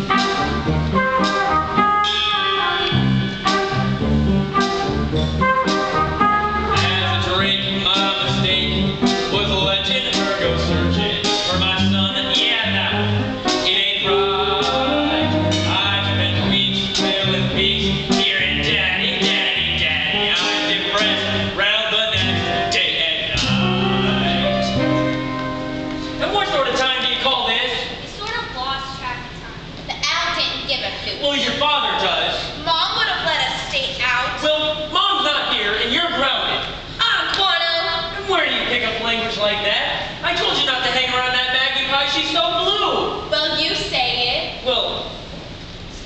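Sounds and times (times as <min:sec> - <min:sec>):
stage musical accompaniment music: 0:00.0 - 0:27.3
low bass notes: 0:00.0 - 0:27.5.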